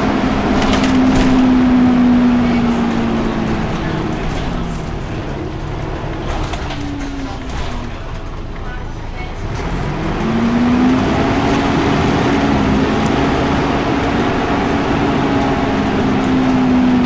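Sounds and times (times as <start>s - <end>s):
bus engine drone: 0.0s - 17.0s
cooling fan hum: 9.9s - 17.0s.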